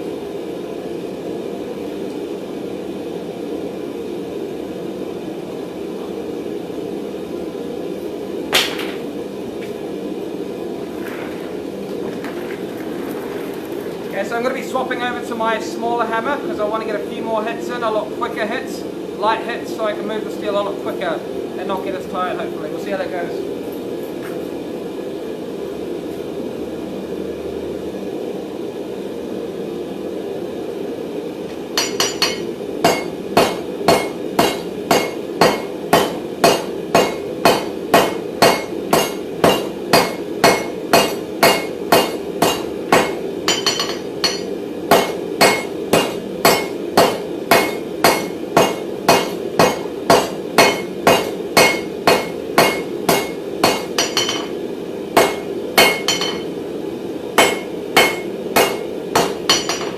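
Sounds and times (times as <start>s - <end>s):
hammer striking steel on anvil: 31.8s - 54.6s, 55.2s - 56.5s, 57.4s - 59.9s.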